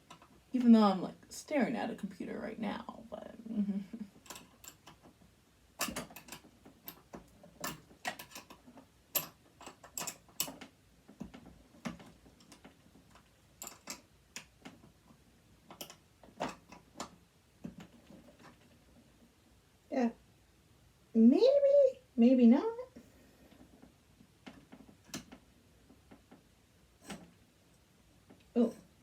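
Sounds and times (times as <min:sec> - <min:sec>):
tools clicking and tapping: 0:00.0 - 0:00.4, 0:04.2 - 0:05.2, 0:05.8 - 0:18.8, 0:24.4 - 0:25.4.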